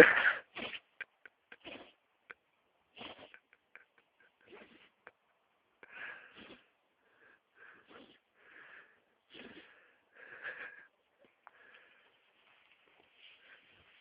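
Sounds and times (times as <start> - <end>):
dog sneezing and snorting: 0.0 - 1.0, 1.6 - 2.0, 2.9 - 3.4, 4.5 - 5.0.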